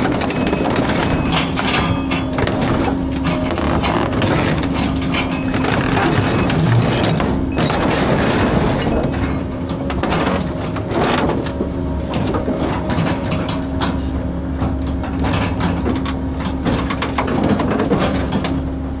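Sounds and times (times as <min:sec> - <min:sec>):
metal crunching and scraping: 0:00.0 - 0:09.2
excavator running: 0:00.0 - 0:19.0.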